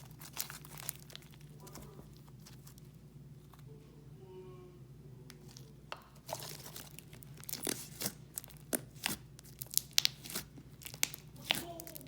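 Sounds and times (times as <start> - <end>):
slime squeezed by hand crunching: 0.0 - 2.9, 6.2 - 12.0.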